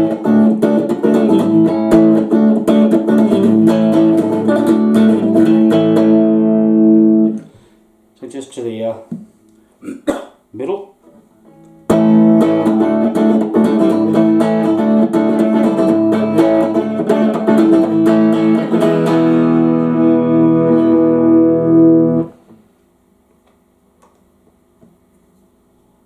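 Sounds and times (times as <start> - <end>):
electric guitar strummed chords: 0.0 - 7.5, 11.4 - 22.5.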